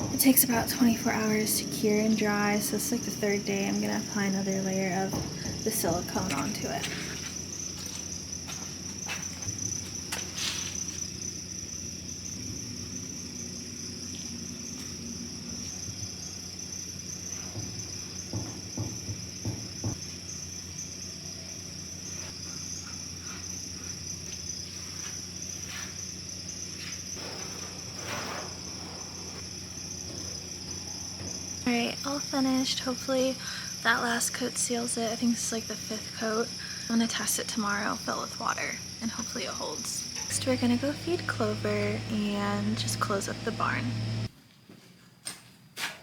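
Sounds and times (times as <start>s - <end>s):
low hum: 0.0s - 9.8s, 40.0s - 44.3s.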